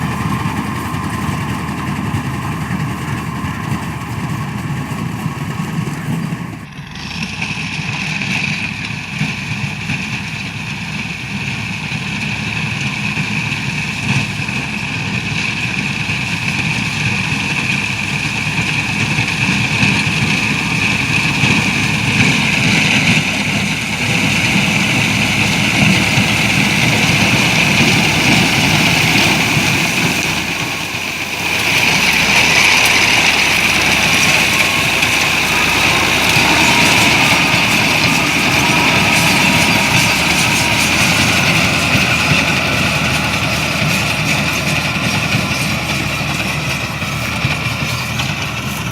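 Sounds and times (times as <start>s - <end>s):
harvesting machinery engine drone: 0.0s - 48.9s
high-pitched whine: 18.6s - 47.3s.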